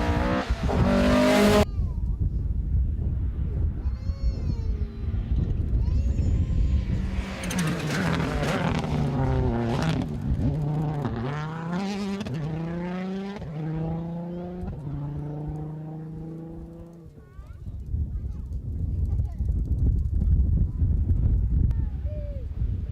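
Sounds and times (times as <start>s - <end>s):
rally car accelerating through gears: 0.0s - 1.6s, 7.0s - 16.9s.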